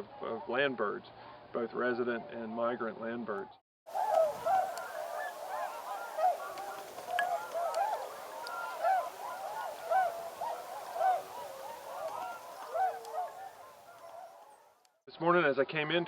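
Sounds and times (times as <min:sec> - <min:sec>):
geese and swans honking: 0:03.9 - 0:14.8
loud single bird calls: 0:03.9 - 0:14.8.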